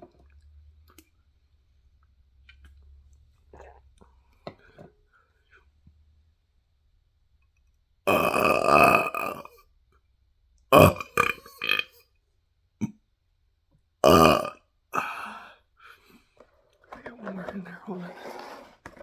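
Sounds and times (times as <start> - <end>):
person burping: 8.1 - 9.6, 10.7 - 12.0, 14.0 - 15.5.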